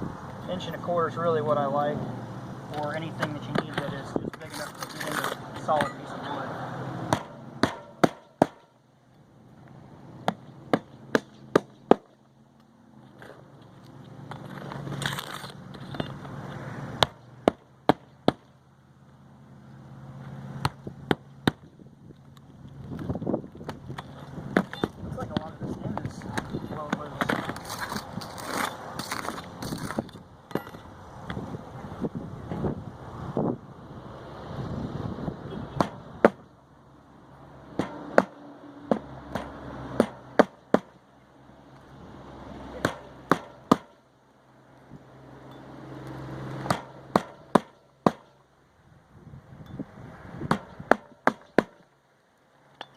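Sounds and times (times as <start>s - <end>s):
hatchet hammering nails: 7.1s - 8.7s, 10.2s - 12.2s, 37.8s - 40.9s, 42.8s - 44.0s, 46.6s - 48.3s, 50.5s - 51.8s.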